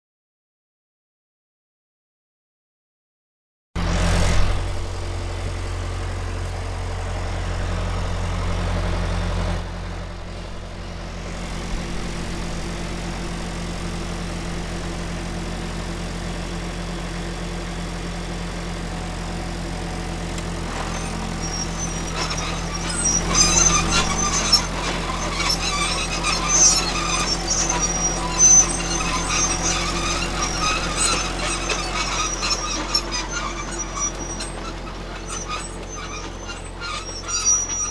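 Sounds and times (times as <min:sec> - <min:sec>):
heavy tank engine running: 0:03.8 - 0:37.9.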